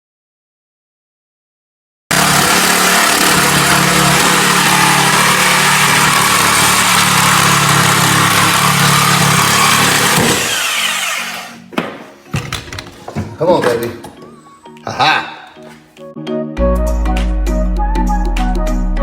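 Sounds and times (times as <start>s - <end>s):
electric tool humming and hissing: 2.1s - 11.6s.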